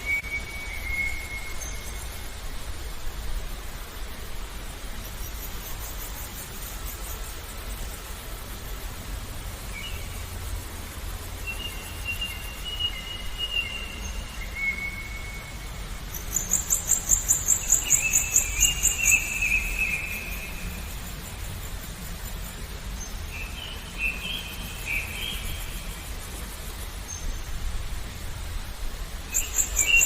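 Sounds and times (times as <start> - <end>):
songbird whistled notes: 0.0 - 2.1, 11.4 - 15.6, 16.2 - 20.7, 29.3 - 30.0
low background noise: 0.0 - 30.0.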